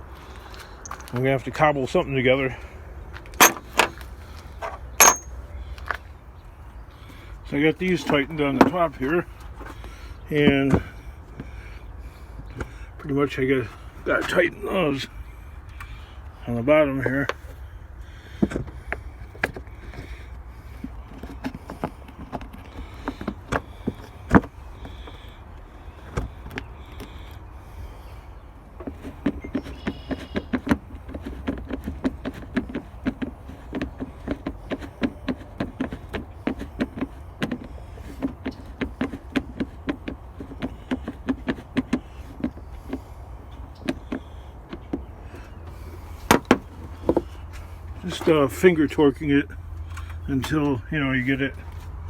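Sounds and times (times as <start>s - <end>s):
metal tools clinking: 0.8s - 1.2s, 3.4s - 4.0s, 4.6s - 5.4s.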